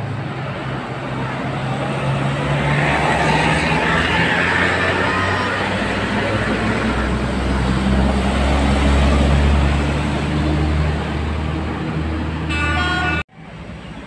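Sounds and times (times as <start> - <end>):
bus engine rumbling: 0.0 - 14.0
short high horn note: 12.5 - 13.2.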